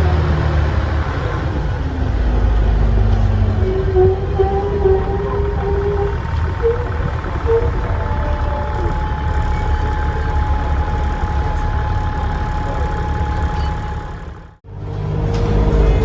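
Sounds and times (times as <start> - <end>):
bus diesel engine running: 0.0 - 16.0
turbocharger whistle: 3.6 - 12.0.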